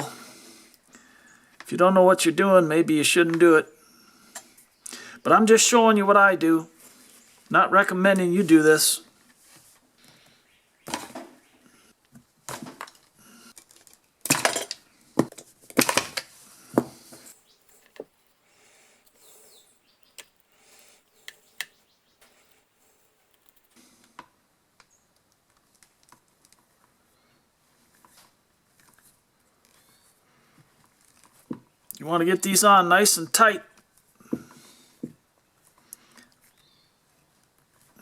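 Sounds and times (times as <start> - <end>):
tools and wire clinking: 17.3 - 23.8.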